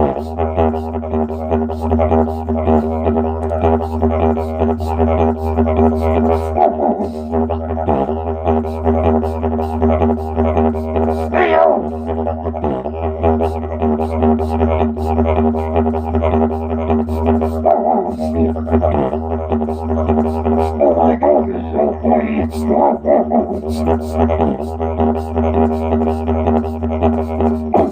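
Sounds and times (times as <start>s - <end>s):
didgeridoo drone: 0.0s - 27.9s
person's voice sweeping up: 11.3s - 12.0s.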